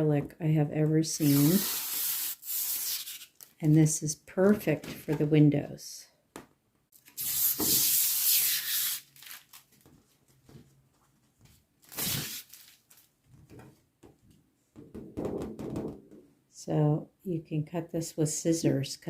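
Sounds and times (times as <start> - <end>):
acrylic sheet rubbing: 1.2 - 3.4, 7.2 - 9.1.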